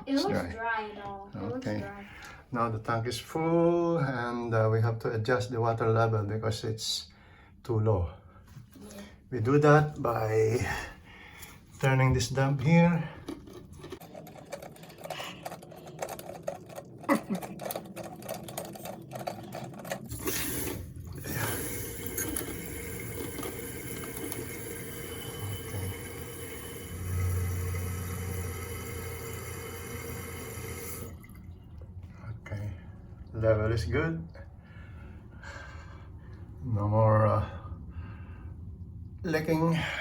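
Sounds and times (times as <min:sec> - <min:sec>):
water refilling toilet tank: 0:13.1 - 0:31.9
rapid clicking: 0:13.8 - 0:20.4.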